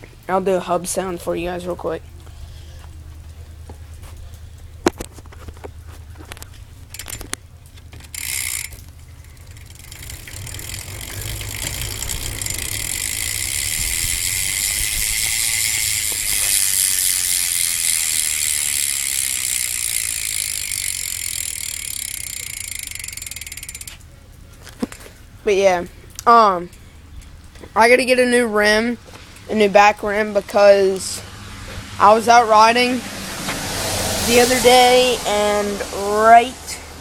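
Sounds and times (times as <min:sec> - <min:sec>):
bike hub ratcheting buzz: 0:04.8 - 0:24.1, 0:27.8 - 0:36.5.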